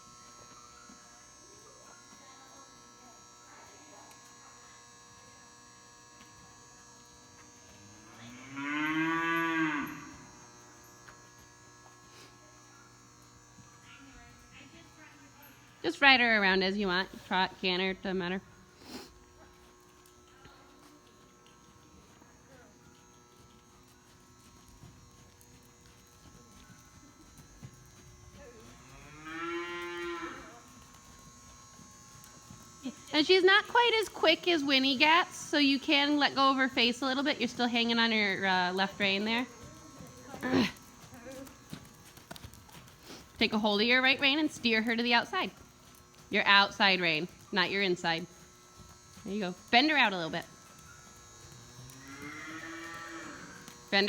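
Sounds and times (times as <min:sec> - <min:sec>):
steady electrical hum: 0:00.0 - 0:54.0
cow mooing: 0:08.0 - 0:10.2, 0:28.7 - 0:30.6, 0:51.7 - 0:54.0.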